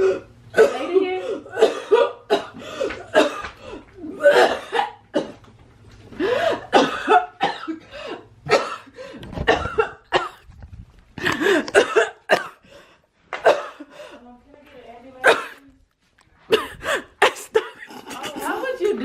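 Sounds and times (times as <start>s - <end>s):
woman coughing and hacking: 0.0s - 5.5s, 6.4s - 10.5s, 11.2s - 12.7s, 13.3s - 14.2s, 15.2s - 15.8s, 16.5s - 19.0s
woman gagging: 3.1s - 5.0s, 16.5s - 19.0s.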